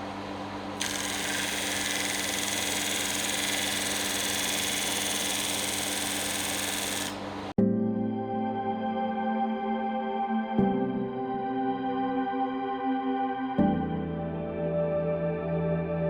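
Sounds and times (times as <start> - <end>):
electric power tool humming: 0.8 - 7.5.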